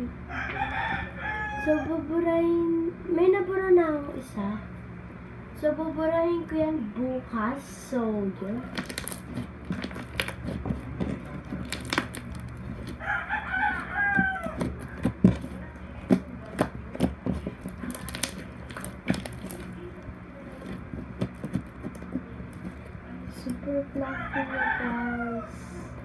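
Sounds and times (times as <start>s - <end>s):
rooster crowing: 0.2s - 2.0s, 12.8s - 15.2s, 24.0s - 25.7s
slime squeezed with sticky pops: 8.6s - 22.8s.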